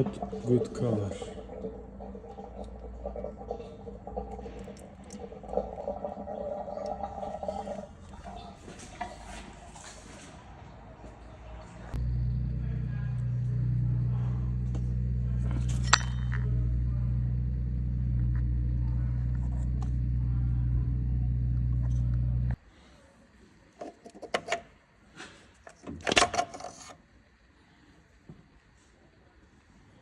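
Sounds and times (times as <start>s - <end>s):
machine humming: 12.0s - 22.6s.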